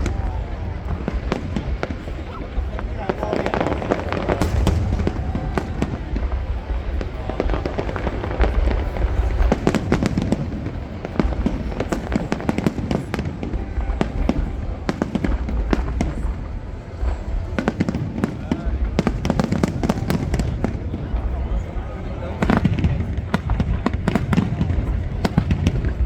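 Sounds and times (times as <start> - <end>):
deep fireworks booming: 0.0 - 26.0
fireworks bangs and crackles: 0.0 - 26.0.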